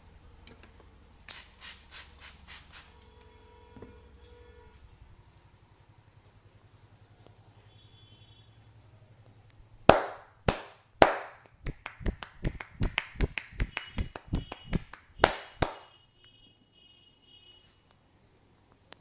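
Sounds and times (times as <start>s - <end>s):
hands slapping on body: 9.9s - 15.9s.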